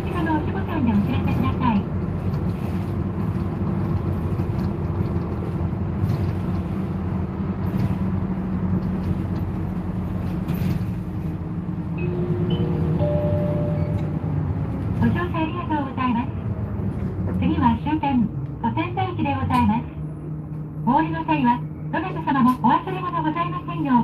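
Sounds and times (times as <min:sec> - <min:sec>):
bus engine and road noise: 0:00.0 - 0:24.0.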